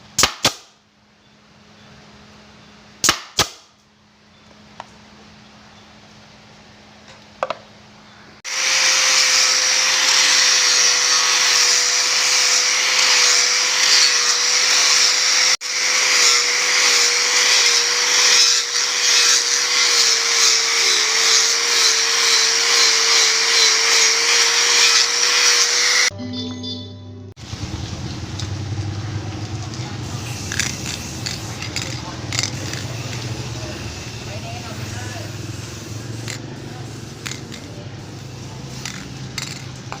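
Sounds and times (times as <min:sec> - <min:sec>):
power tool whining on wood: 0:08.5 - 0:26.1.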